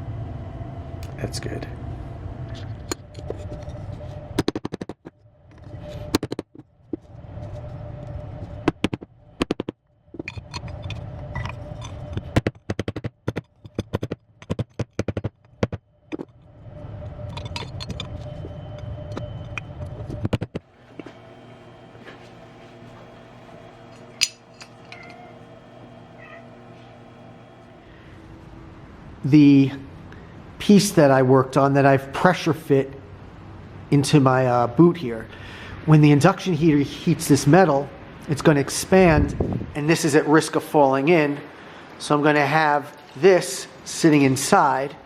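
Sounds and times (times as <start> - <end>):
motor hum: 0.0 - 30.6.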